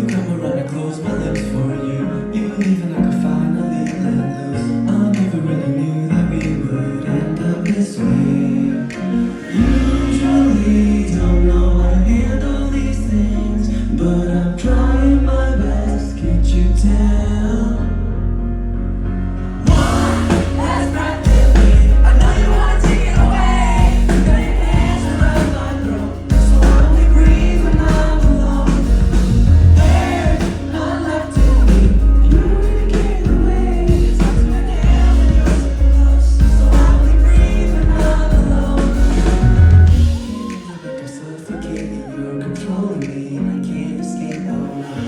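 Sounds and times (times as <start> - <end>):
live pop-rock band playing: 0.0 - 11.7, 19.4 - 45.0
person singing: 0.0 - 18.0, 19.6 - 45.0
heavy bass line: 9.6 - 18.4, 19.3 - 40.5.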